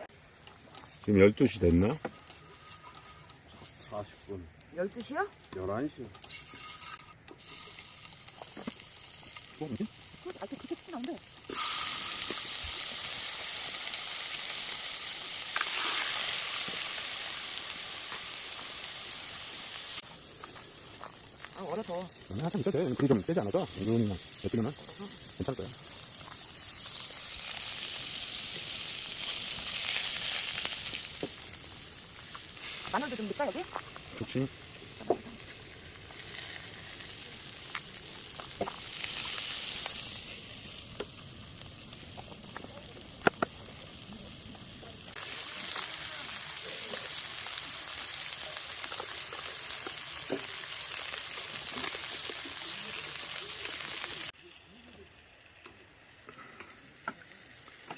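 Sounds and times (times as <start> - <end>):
food sizzling in a hot pan: 5.8 - 57.9.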